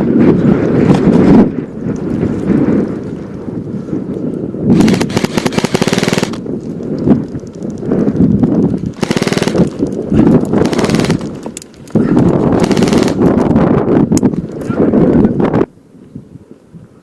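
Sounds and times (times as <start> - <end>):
airsoft gun automatic bursts: 4.7 - 6.4, 8.9 - 9.8, 10.4 - 11.4, 12.4 - 13.4.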